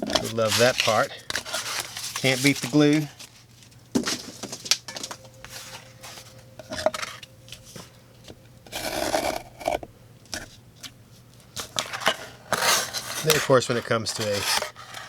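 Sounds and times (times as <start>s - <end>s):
knife cutting cardboard and tape: 14.1s - 15.0s.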